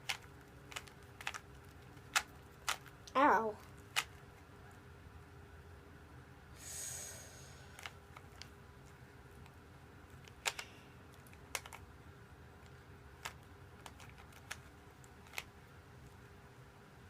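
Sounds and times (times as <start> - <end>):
puzzle cube clicking as twisted: 0.0 - 3.0, 3.9 - 4.2, 7.7 - 8.5, 10.2 - 11.8, 13.2 - 15.5.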